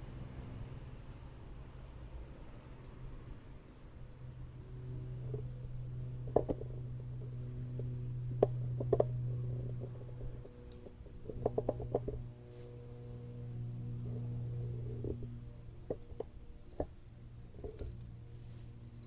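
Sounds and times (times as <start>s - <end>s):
low hum: 0.0s - 19.0s
wood fire crackling: 5.1s - 18.9s.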